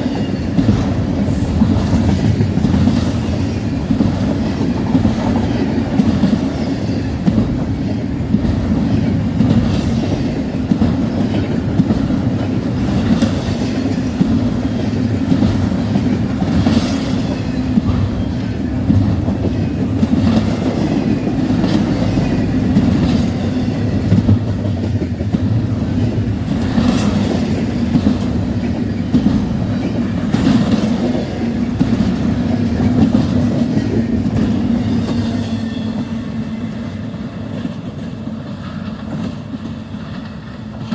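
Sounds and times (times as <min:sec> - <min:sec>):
freight train cars rumbling: 0:00.0 - 0:40.9
wheels clicking over rail joints: 0:36.7 - 0:40.9.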